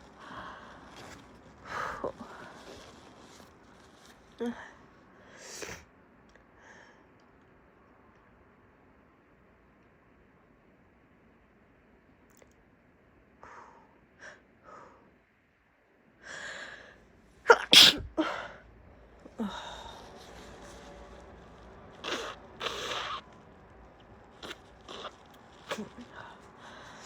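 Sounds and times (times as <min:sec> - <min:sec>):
woman sneezing: 0:17.5 - 0:18.4.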